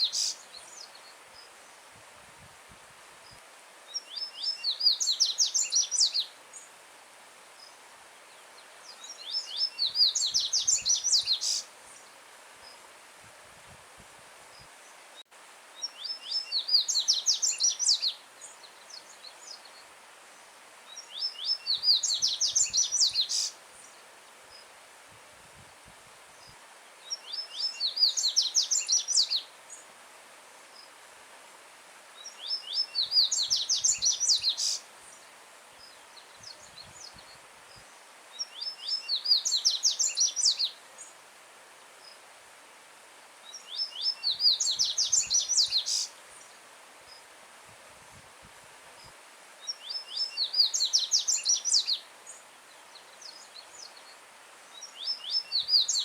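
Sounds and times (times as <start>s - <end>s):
bird singing high-pitched songs: 0.0s - 1.2s, 3.9s - 6.7s, 8.9s - 11.7s, 15.8s - 19.8s, 20.9s - 24.0s, 27.0s - 29.8s, 32.2s - 34.8s, 38.3s - 41.1s, 43.5s - 46.6s, 49.0s - 56.0s
faint stream rushing: 0.0s - 56.0s.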